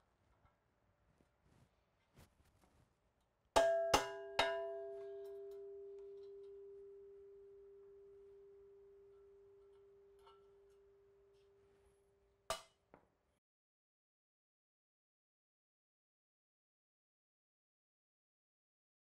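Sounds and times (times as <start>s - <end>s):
metal part struck ringing: 3.6s - 11.3s.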